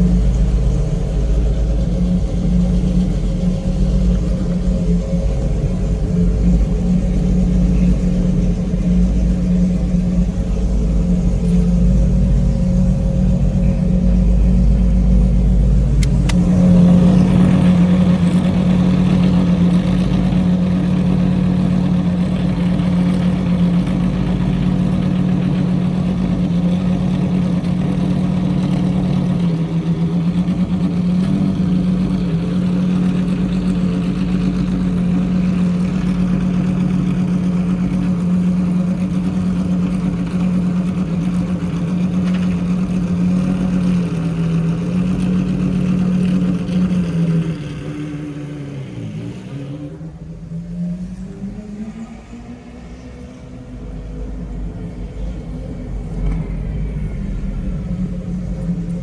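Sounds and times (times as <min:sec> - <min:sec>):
car engine running: 0:00.0 - 0:59.0
brief click: 0:16.0 - 0:16.6.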